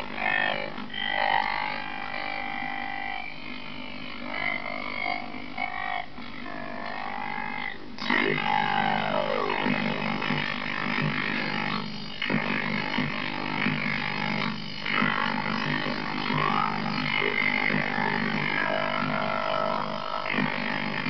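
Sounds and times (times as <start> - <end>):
buzzy warbling electronic tones: 6.8 - 21.0.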